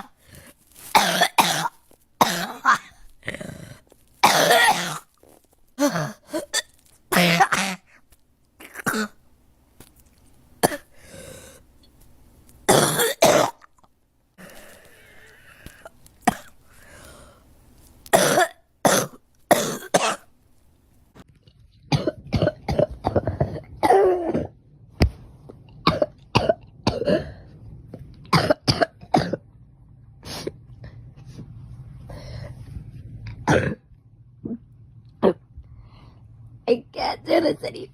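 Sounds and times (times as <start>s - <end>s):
girl coughing: 0.9s - 3.0s, 4.2s - 5.1s, 5.8s - 7.9s, 8.6s - 9.2s, 10.6s - 10.9s, 12.7s - 13.6s, 18.1s - 20.3s, 21.9s - 24.6s.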